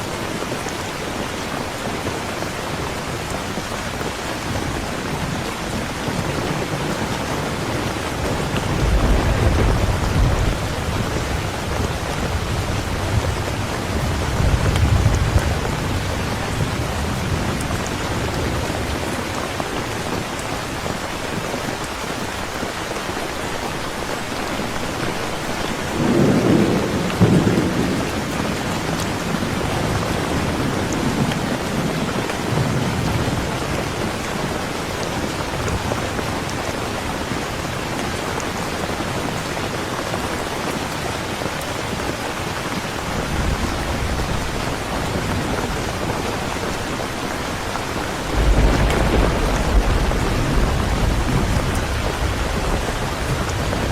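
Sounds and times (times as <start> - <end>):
steady rain falling: 0.0 - 53.9
thunder rumbling: 4.4 - 19.2, 25.4 - 34.6, 43.0 - 53.9.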